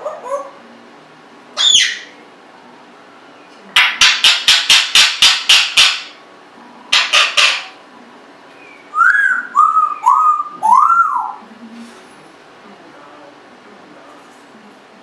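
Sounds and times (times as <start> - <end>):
parrot whistled notes: 1.6 - 2.1, 8.6 - 11.4
parrot harsh calls: 1.6 - 2.2, 6.9 - 7.8, 8.6 - 11.4.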